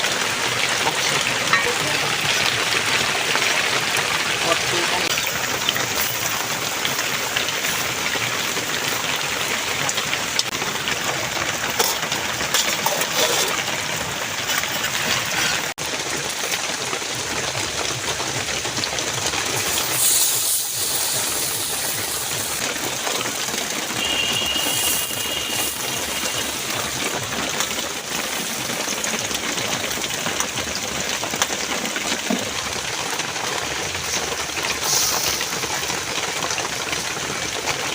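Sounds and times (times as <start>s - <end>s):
food sizzling in hot oil: 0.0s - 16.8s, 18.5s - 37.9s.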